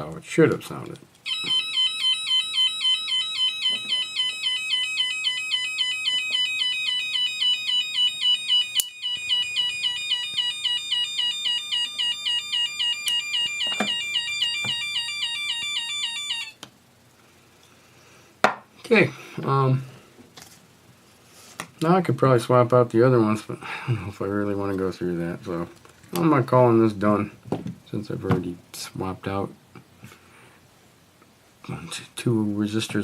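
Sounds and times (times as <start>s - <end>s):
electronic siren tone sweeping up: 1.3s - 16.6s.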